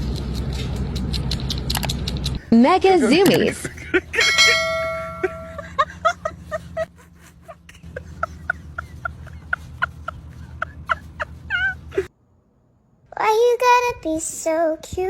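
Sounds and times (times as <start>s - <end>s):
ringing chime-like tone: 4.2s - 5.8s.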